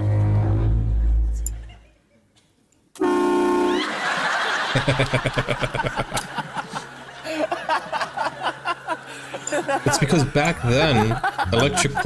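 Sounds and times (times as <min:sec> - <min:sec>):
train horn blasting: 0:03.0 - 0:03.9
people laughing: 0:03.7 - 0:12.0.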